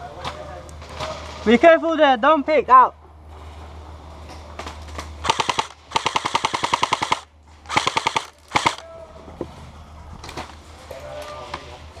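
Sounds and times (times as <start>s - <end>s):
airsoft gun firing bursts: 5.2s - 8.8s.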